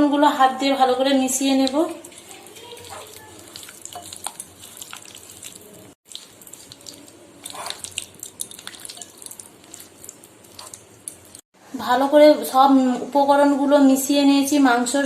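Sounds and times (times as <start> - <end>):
wet squelches of mixing by hand: 0.8 - 11.6.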